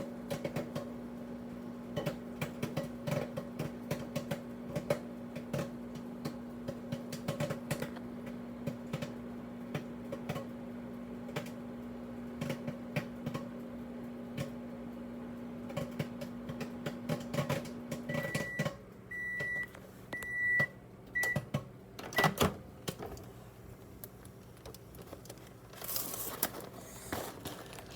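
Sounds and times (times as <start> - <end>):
microwave oven humming: 0.0 - 27.9
popcorn popping: 0.0 - 27.9
microwave beeps: 17.8 - 22.6.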